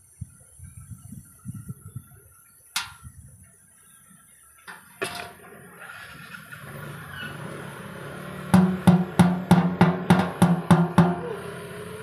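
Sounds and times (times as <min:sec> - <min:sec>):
hammer on sheet metal tank: 0:08.5 - 0:11.4.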